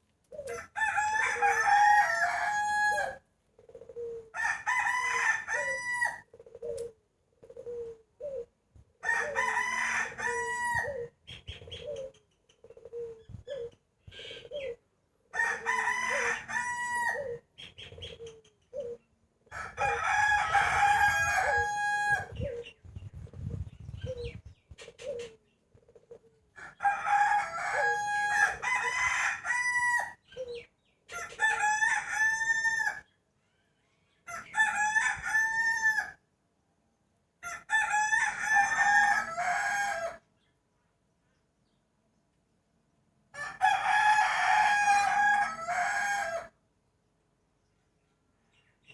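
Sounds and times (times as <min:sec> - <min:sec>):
roosters crowing: 0:00.4 - 0:03.2, 0:04.3 - 0:06.3, 0:09.0 - 0:11.1, 0:15.3 - 0:17.4, 0:19.5 - 0:22.6, 0:26.6 - 0:30.4, 0:31.1 - 0:33.1, 0:34.2 - 0:36.2, 0:37.4 - 0:40.3, 0:43.3 - 0:46.6.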